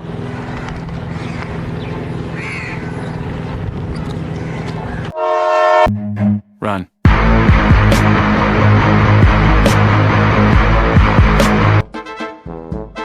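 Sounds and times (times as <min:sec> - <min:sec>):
traffic hum: 0:00.0 - 0:05.2
air horn blast: 0:05.1 - 0:06.4.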